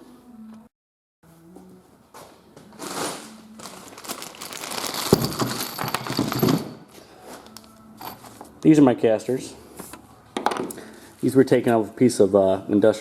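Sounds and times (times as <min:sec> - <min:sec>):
objects rustling and clattering: 0:02.2 - 0:08.6.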